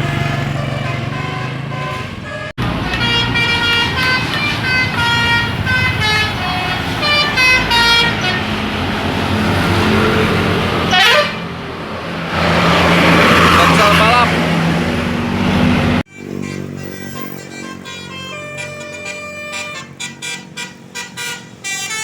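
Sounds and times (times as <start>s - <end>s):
musical bus horn tune: 0.0s - 8.6s, 10.8s - 11.6s, 16.1s - 22.0s
bus engine running: 0.0s - 22.0s.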